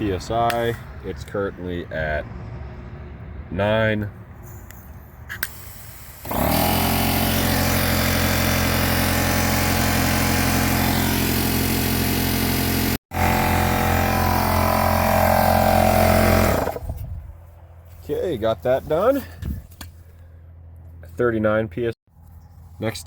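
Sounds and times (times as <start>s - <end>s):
air compressor running: 5.4s - 17.0s.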